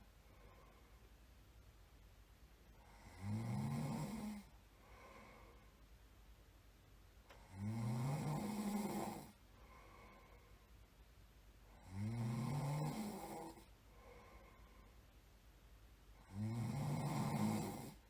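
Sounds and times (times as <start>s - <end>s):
person snoring: 2.8s - 5.4s, 7.4s - 9.4s, 11.7s - 14.5s, 16.2s - 18.0s.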